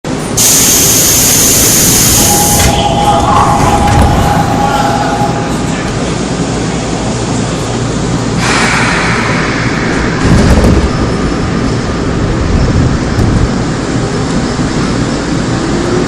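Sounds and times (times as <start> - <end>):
electric train noise: 0.1 - 16.0
burst of hiss: 8.4 - 10.2
heavy low thump: 8.5 - 11.9.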